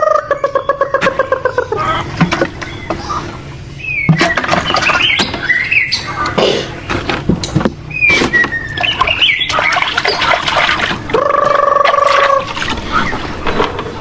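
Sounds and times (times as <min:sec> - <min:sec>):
long drawn-out poultry call: 0:00.0 - 0:02.2, 0:11.0 - 0:13.3
poultry peeping and squawking: 0:00.0 - 0:14.0.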